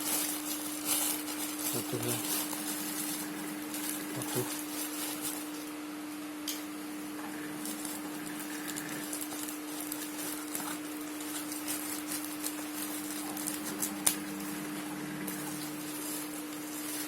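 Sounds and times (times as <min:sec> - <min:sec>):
package crinkling and rustling: 0:00.0 - 0:05.8, 0:07.5 - 0:17.0
low hum: 0:01.7 - 0:05.6, 0:12.0 - 0:16.9.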